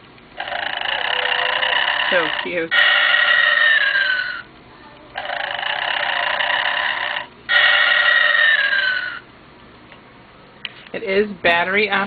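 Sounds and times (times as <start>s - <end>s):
toy playing recorded snoring: 0.4s - 4.5s, 5.2s - 9.3s.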